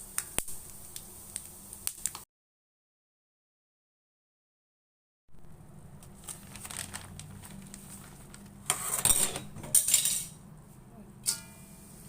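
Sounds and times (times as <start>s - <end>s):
dishes and utensils clattering: 8.7s - 10.4s, 11.2s - 11.8s
sharp clink: 11.2s - 11.7s.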